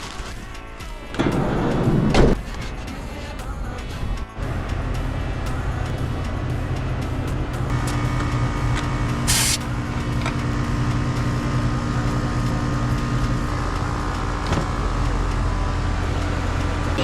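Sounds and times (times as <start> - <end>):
air conditioner unit humming: 4.3 - 17.0
short hiss: 9.3 - 9.6.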